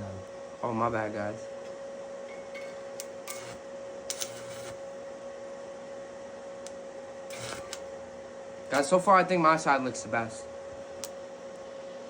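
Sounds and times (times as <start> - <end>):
welder machine hum: 2.7 - 5.1, 6.6 - 10.2
welding crackles: 3.0 - 4.8, 7.3 - 7.9.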